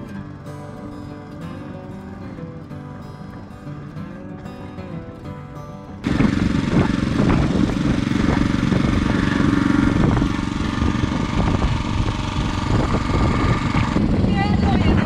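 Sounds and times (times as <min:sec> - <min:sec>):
water pump engine running: 0:06.0 - 0:15.0.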